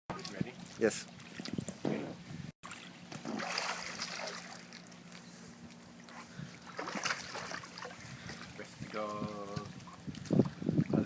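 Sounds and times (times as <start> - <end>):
pool water splashing: 0.1 - 8.7.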